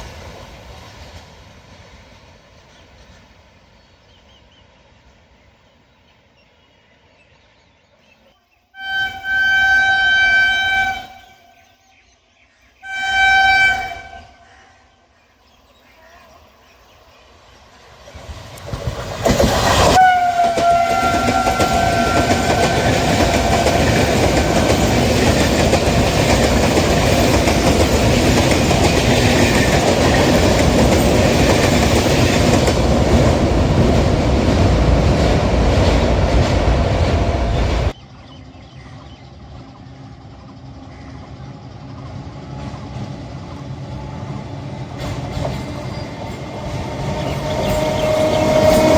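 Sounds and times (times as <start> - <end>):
train wheel and rail noise: 0.0 - 48.9
train horn blasts: 8.7 - 11.8, 12.8 - 14.4, 19.9 - 24.2, 47.2 - 48.9.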